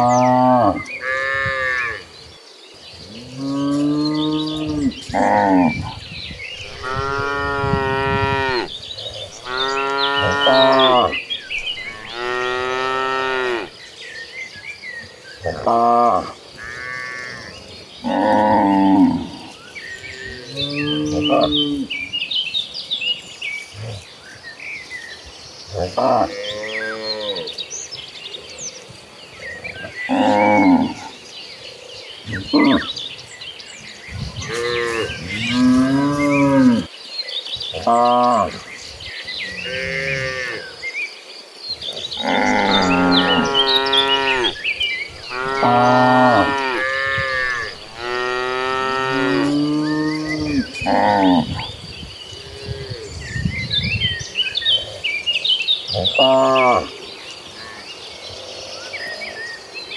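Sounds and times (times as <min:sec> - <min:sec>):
cows mooing: 0:00.0 - 0:02.1, 0:03.1 - 0:06.0, 0:06.6 - 0:13.7, 0:15.4 - 0:22.0, 0:29.8 - 0:31.1, 0:32.3 - 0:33.0, 0:34.2 - 0:36.9, 0:39.5 - 0:40.7, 0:42.1 - 0:51.8, 0:55.9 - 0:57.0
faint chirping: 0:00.0 - 0:41.0
cattle mooing: 0:06.6 - 0:13.7, 0:42.2 - 0:44.6, 0:45.2 - 0:51.7.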